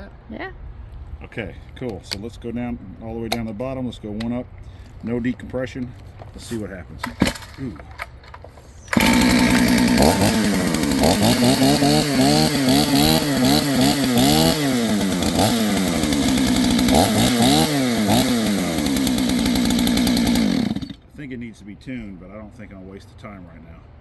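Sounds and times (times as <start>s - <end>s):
chainsaw engine running unevenly: 7.0s - 7.9s, 8.9s - 21.0s.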